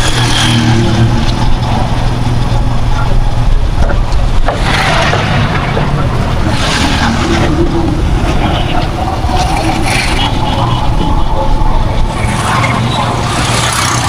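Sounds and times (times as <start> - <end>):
road and traffic noise: 0.0 - 14.0
rush of passing traffic: 0.0 - 14.0
vehicle engine running: 0.0 - 14.0.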